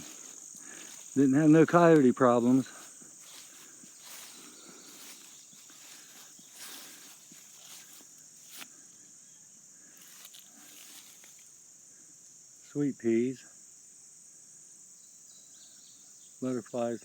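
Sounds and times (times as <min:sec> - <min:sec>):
footsteps through grass: 0:00.0 - 0:08.8, 0:09.9 - 0:11.5
insects trilling: 0:00.0 - 0:17.0.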